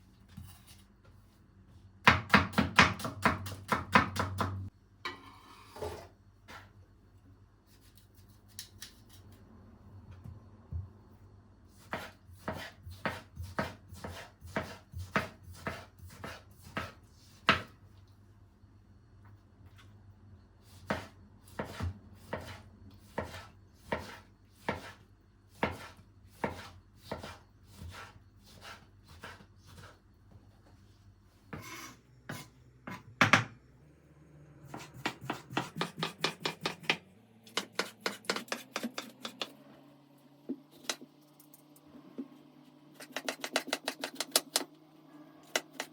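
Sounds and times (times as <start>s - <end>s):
knife chopping on cutting board: 2.0s - 4.6s, 11.8s - 17.7s, 20.8s - 25.0s, 25.6s - 29.9s, 34.7s - 39.5s, 43.0s - 44.7s, 45.4s - 45.9s.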